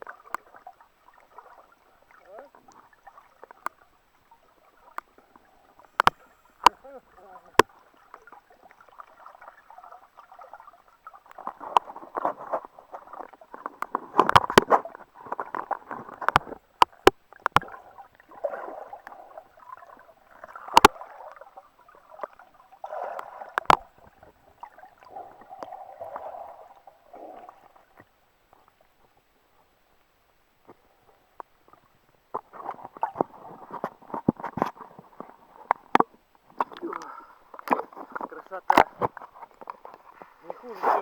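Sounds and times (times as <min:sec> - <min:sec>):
water splashing from swimming: 0:00.0 - 0:28.1.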